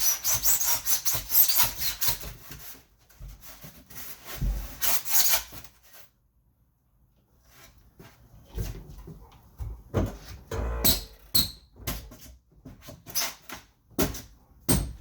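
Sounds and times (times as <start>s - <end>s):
soft scrapes and knocks: 2.4s - 4.8s.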